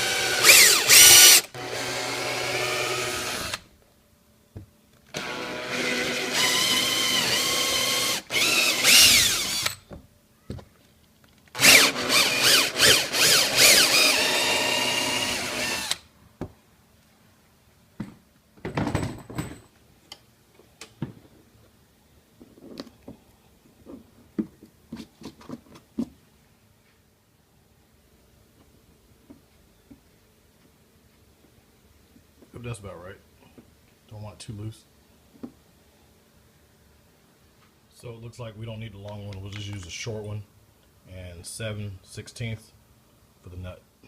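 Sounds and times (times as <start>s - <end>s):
electric drill whining: 0.0s - 3.6s, 5.1s - 9.8s, 11.6s - 16.0s.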